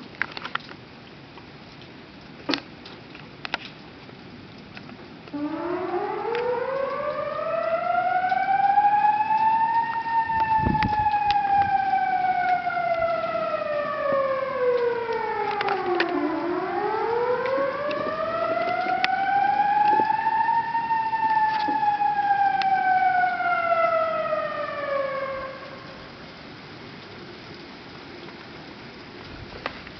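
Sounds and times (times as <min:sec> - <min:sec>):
flood warning siren wailing: 0:05.1 - 0:29.9.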